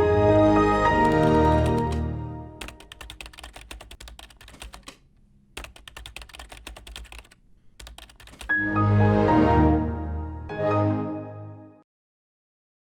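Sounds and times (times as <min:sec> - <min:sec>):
computer keyboard typing: 0:01.0 - 0:08.6.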